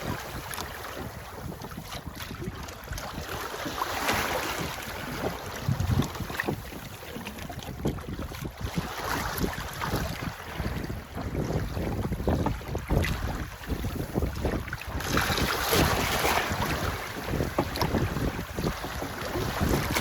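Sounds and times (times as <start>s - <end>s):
water splashing along hull: 0.0s - 20.0s
wind buffeting microphone: 0.0s - 20.0s.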